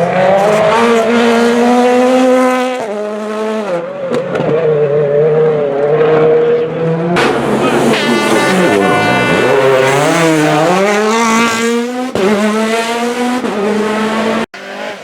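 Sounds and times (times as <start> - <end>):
rally car engine revving: 0.0 - 15.0.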